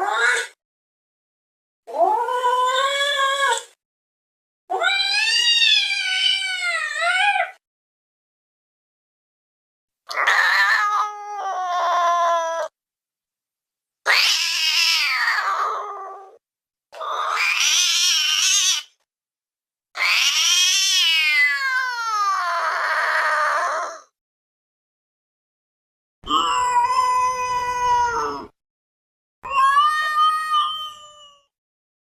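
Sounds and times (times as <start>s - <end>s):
cat-like yowls: 0.0s - 0.6s, 1.9s - 3.7s, 4.7s - 7.6s, 10.1s - 12.7s, 14.1s - 16.4s, 17.0s - 18.9s, 20.0s - 24.1s, 26.2s - 28.6s, 29.4s - 31.5s.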